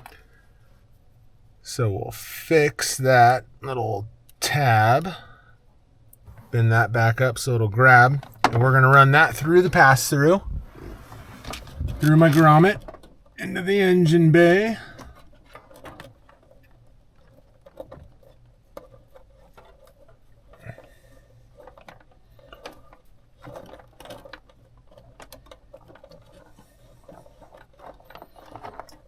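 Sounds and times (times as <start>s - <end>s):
wire rustling through rubber grommet: 6.2s - 29.0s.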